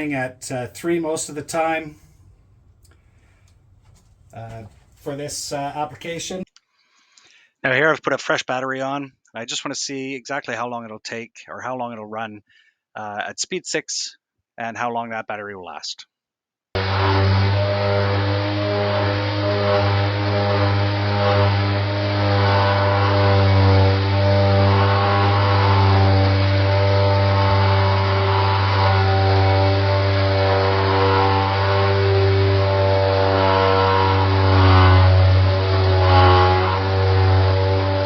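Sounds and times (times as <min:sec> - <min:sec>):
orbital sander motor hum: 0:16.8 - 0:38.0.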